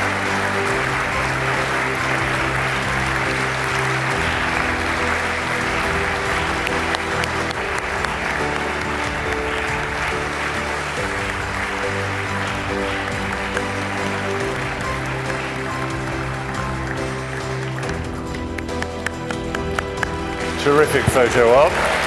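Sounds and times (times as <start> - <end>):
audience applauding: 0.0 - 22.0
upbeat music with bass line: 0.0 - 22.0.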